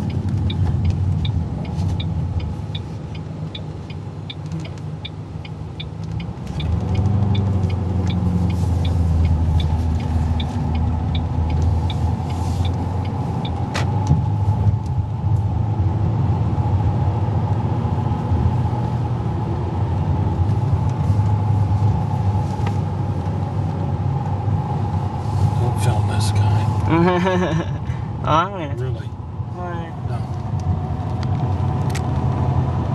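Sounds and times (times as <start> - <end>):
light regular ticking: 0.0 - 14.0
car engine and road rumble: 0.0 - 32.9.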